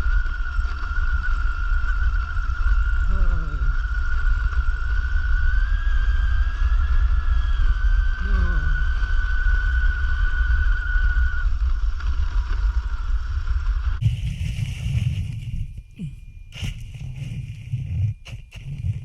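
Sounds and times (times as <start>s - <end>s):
electric rc car whining and rumbling: 0.0s - 14.1s.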